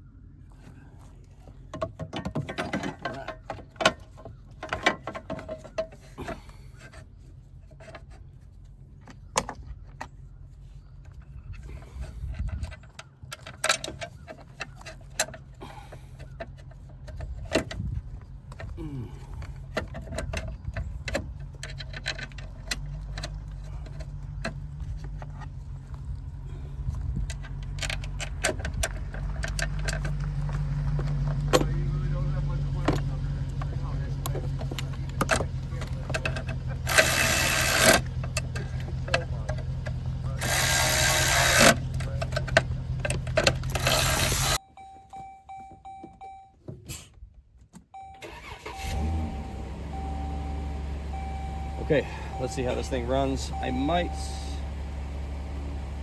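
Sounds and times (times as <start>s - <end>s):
metal tools clinking and rattling: 1.8s - 7.1s, 11.1s - 26.2s, 27.2s - 31.7s, 32.7s - 44.6s
steady low hum: 48.9s - 56.0s.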